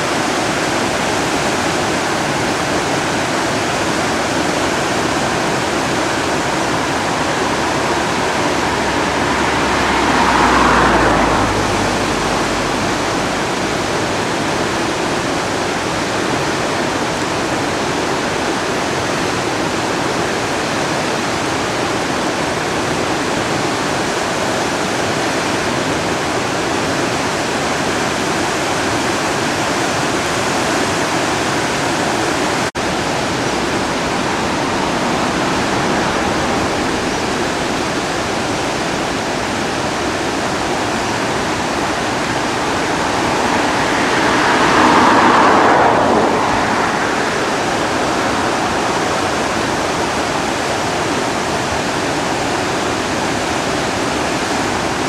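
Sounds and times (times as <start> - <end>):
floodwater rushing roar: 0.0 - 55.0
low rumble: 5.2 - 14.8, 40.8 - 50.1.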